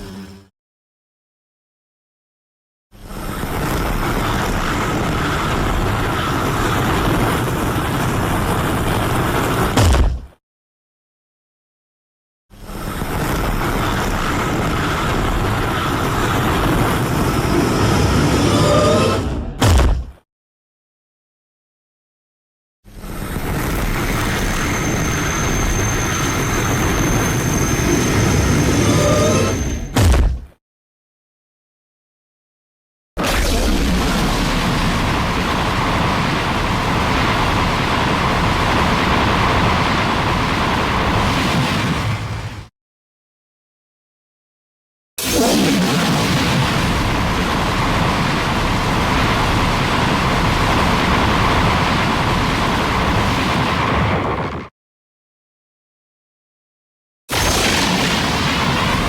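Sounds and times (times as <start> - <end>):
dense rumbling monster roar: 15.4 - 19.6.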